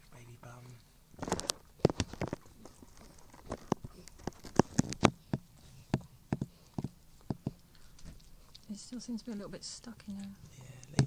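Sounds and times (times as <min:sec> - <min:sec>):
dog licking and chewing: 0:00.8 - 0:11.0.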